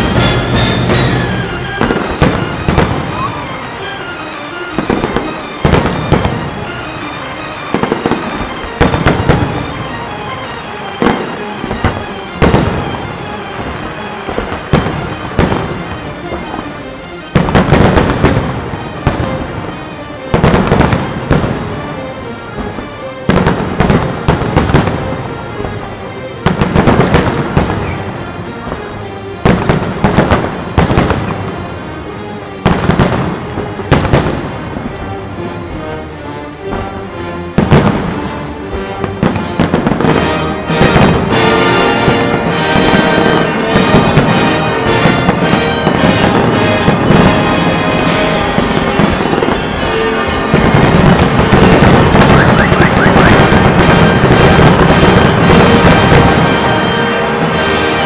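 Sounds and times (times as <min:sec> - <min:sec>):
fireworks shells bursting: 0:00.0 - 0:03.3, 0:40.9 - 0:57.6
crackling firework tails: 0:00.0 - 0:06.8, 0:39.1 - 0:56.6
music: 0:00.0 - 0:58.0.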